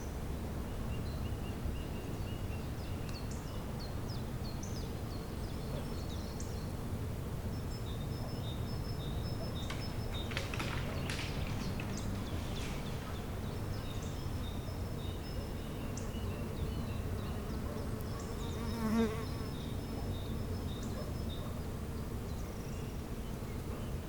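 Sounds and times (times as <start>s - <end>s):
low background noise: 0.0s - 24.0s
bee buzzing past: 18.2s - 19.6s.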